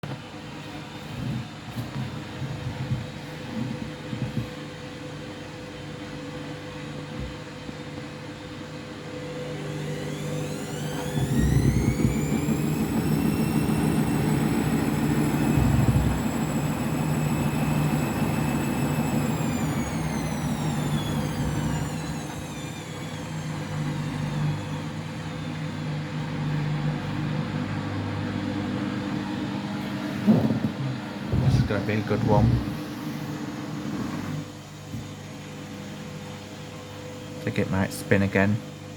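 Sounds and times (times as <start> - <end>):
washing machine motor whine: 0.0 - 38.9
drum rumbling: 11.4 - 16.5, 30.2 - 33.0.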